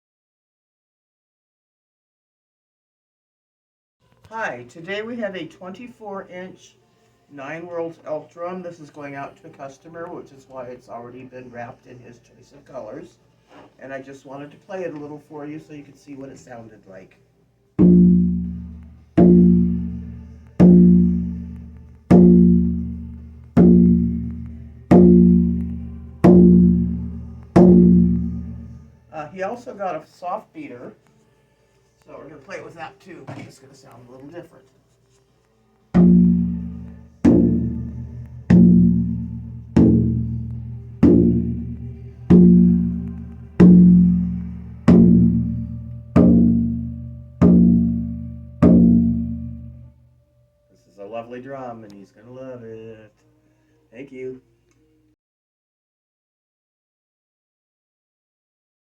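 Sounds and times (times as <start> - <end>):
frame drum struck with beater: 17.8 - 28.8, 36.0 - 49.9.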